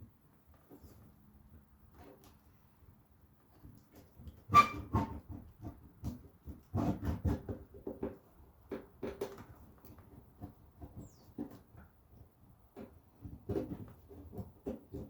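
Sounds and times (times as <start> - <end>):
short squeak: 4.5 - 5.2.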